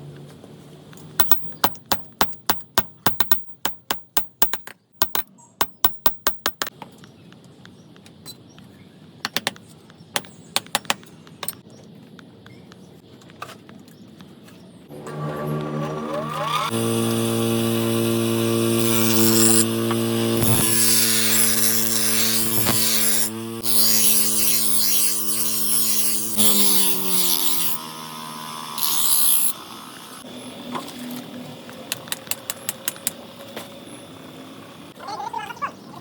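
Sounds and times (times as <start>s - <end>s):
electric grinder running: 14.9s - 30.6s.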